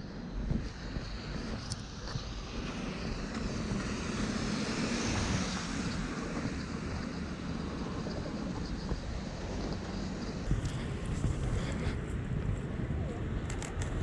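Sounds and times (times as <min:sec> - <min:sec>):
vehicle passing on wet street: 0:01.9 - 0:10.2.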